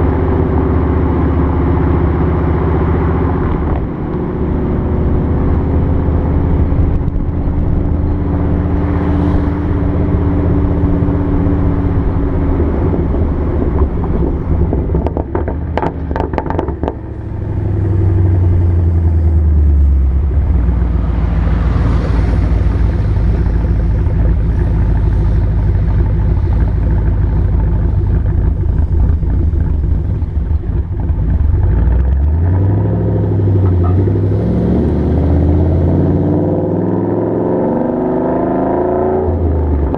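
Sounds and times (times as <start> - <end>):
car engine revving: 0.0 - 39.9
exhaust pops and crackles: 11.5 - 17.4, 22.0 - 32.5.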